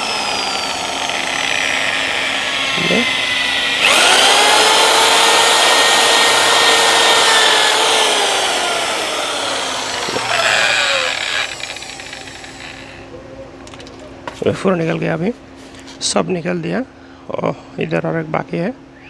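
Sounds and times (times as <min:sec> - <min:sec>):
electric drill whining: 0:00.0 - 0:13.1.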